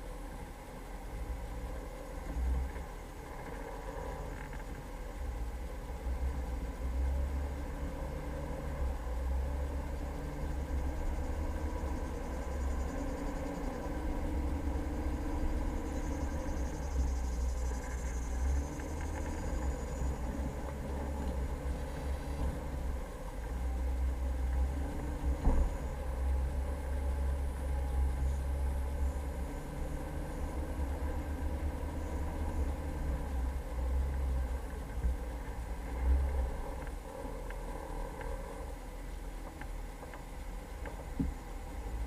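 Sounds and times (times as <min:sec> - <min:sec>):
engine and drivetrain rumble: 0:00.0 - 0:42.0.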